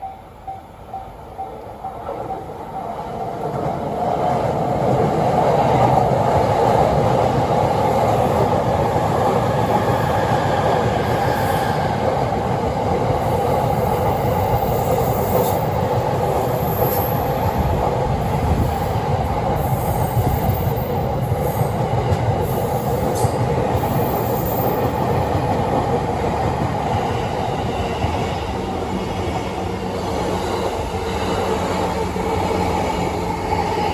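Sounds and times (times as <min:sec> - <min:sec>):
train wheels rumbling on rail: 0:00.0 - 0:33.9.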